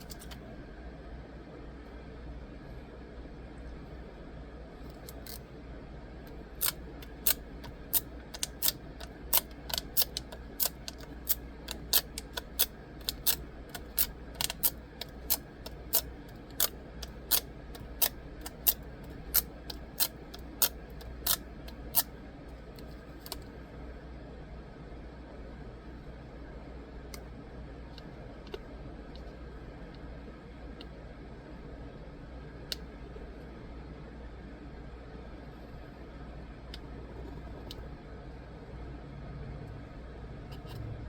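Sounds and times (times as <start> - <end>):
faint low hum: 0.0 - 41.0
sharp short clicks: 6.6 - 22.1.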